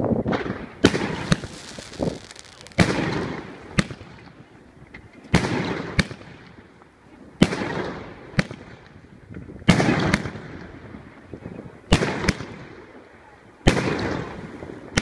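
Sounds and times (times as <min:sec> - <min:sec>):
firework bangs: 0:00.2 - 0:04.6, 0:05.3 - 0:06.6, 0:09.6 - 0:10.8, 0:11.9 - 0:12.8
firework crackling: 0:00.3 - 0:09.1.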